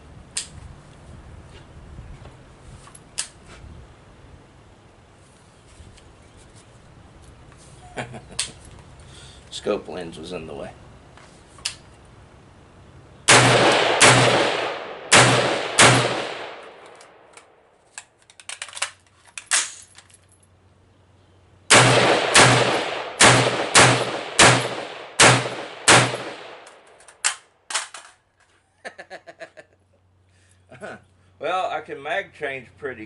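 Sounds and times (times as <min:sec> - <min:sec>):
metallic clicks of magazine change: 0:02.9 - 0:03.4, 0:16.7 - 0:20.4, 0:26.6 - 0:28.2
rifle shots: 0:13.3 - 0:17.3, 0:21.7 - 0:27.9.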